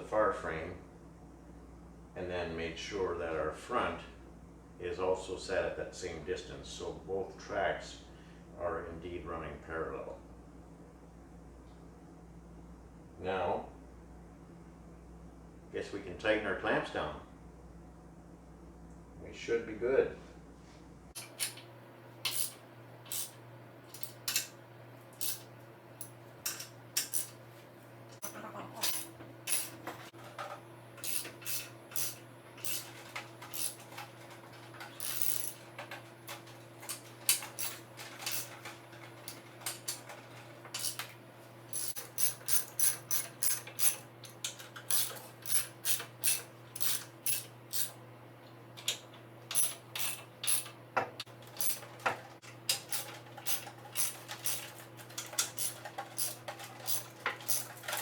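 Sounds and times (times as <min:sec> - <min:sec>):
wrench clicking on bolts: 0:22.2 - 0:24.5, 0:25.2 - 0:27.3, 0:31.0 - 0:34.0, 0:34.8 - 0:35.6, 0:36.9 - 0:40.0, 0:40.8 - 0:41.1, 0:41.7 - 0:48.0, 0:48.8 - 0:50.8, 0:51.5 - 0:51.9, 0:52.7 - 0:58.0.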